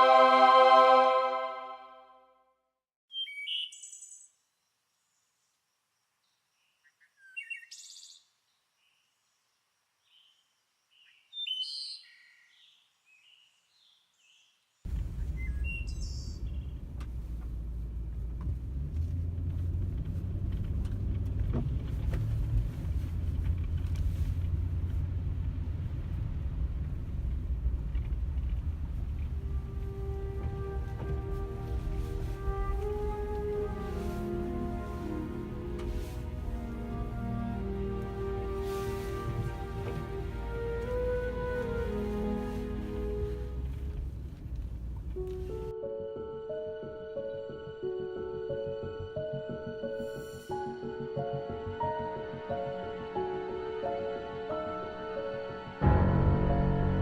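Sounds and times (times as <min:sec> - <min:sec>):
high bird chirps: 0:03.1 - 0:04.3
low outdoor rumble: 0:14.9 - 0:45.7, 0:55.8 - 0:57.0.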